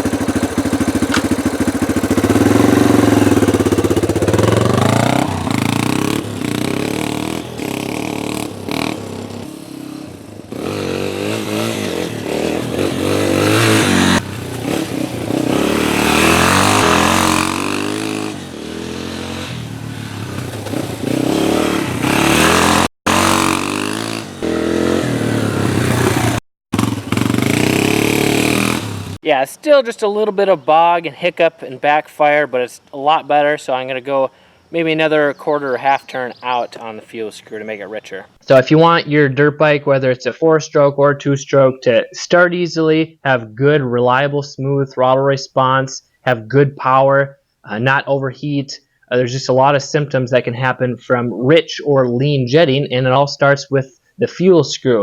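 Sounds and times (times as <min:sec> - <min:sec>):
engine backfire: 0:00.0 - 0:29.2
motorcycle engine revving: 0:00.0 - 0:29.2.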